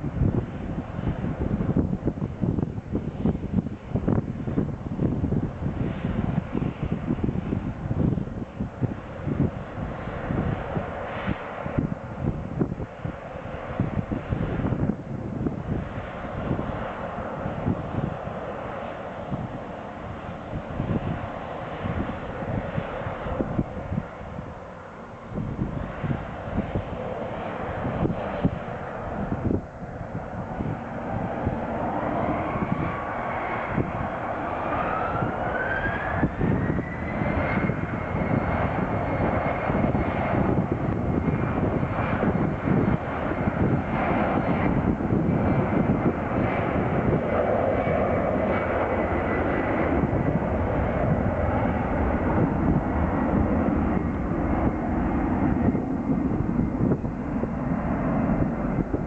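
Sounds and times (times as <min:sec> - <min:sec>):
jet engines spooling up: 0:05.4 - 0:59.0.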